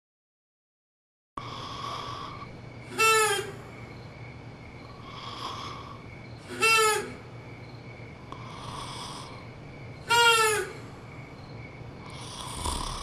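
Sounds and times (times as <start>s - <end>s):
rasping snoring breath: 1.4s - 2.5s, 5.0s - 6.0s, 8.3s - 9.6s, 12.0s - 13.0s
high whistling snore: 8.3s - 9.6s, 12.0s - 13.0s.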